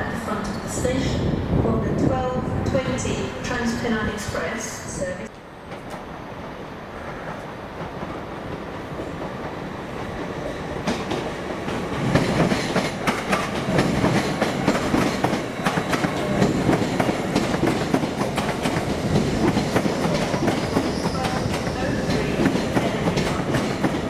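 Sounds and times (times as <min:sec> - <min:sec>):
train wheels clicking over rails: 0:05.4 - 0:24.0.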